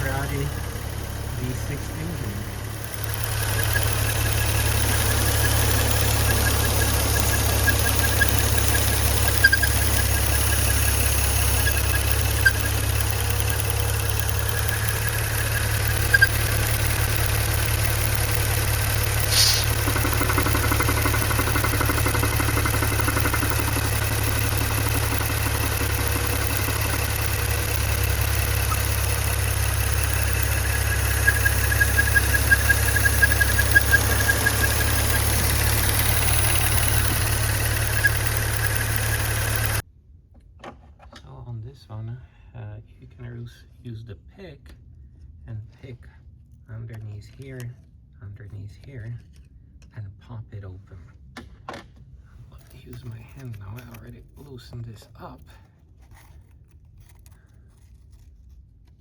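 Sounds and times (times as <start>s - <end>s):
car engine idling: 0.0s - 39.8s
rapid high squeak: 0.0s - 39.8s
sharp click: 1.4s - 39.8s.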